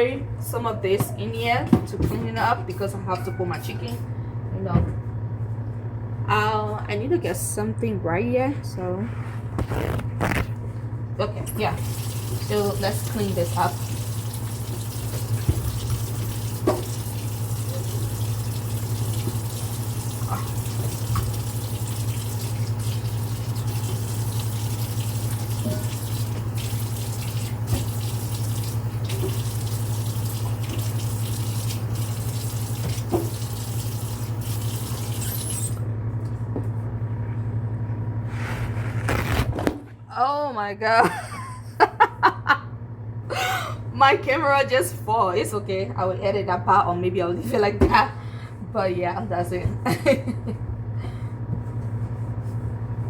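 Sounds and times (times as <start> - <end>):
steady low hum: 0.0 - 35.0
tap running water into sink: 11.6 - 35.8.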